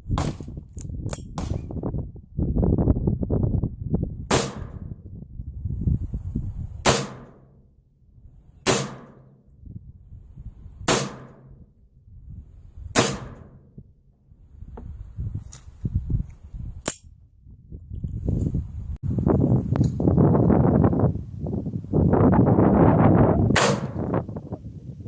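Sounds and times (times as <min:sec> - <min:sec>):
rifle gunshots: 0:04.3 - 0:04.8, 0:06.8 - 0:07.5, 0:08.6 - 0:09.4, 0:10.9 - 0:11.5, 0:13.0 - 0:13.6, 0:23.5 - 0:24.0.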